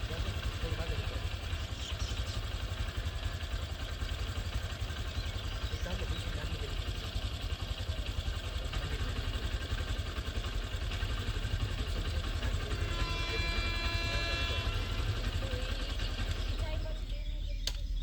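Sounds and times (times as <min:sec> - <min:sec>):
train rumbling: 0:09.5 - 0:17.6.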